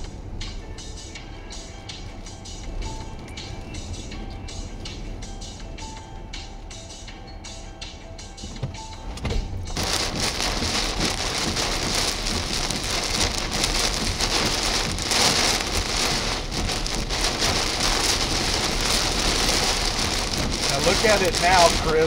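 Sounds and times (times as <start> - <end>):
heavy rain pouring: 8.6 - 22.0.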